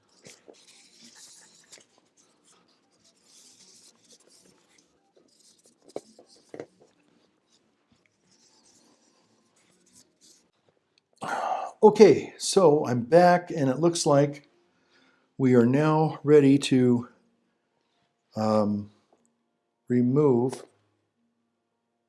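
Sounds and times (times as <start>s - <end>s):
wipe rubbing thermal paste: 0.0s - 10.5s.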